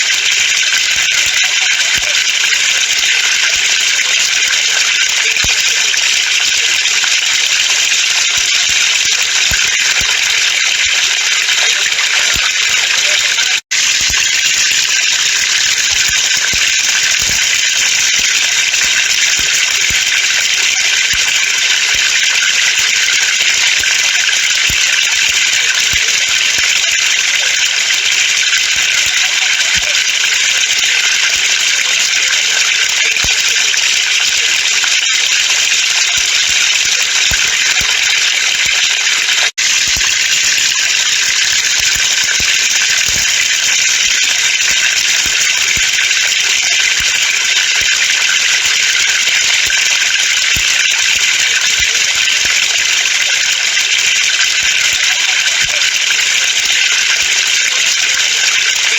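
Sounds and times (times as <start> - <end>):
water splashing from a pipe: 0.0 - 58.9.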